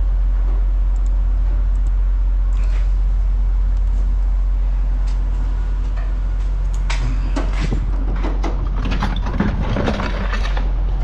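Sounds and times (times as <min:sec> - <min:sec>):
steady low rumble: 0:00.0 - 0:11.0
sharp knocks and clatter: 0:06.9 - 0:10.8.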